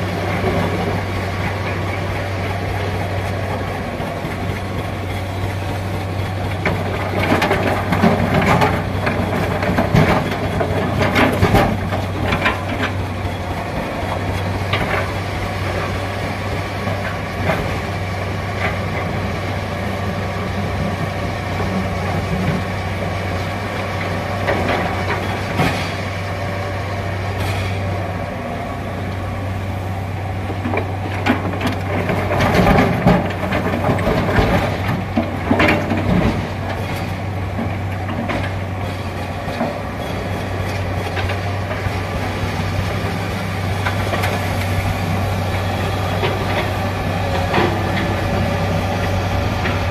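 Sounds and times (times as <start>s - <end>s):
excavator diesel engine running: 0.0s - 49.9s.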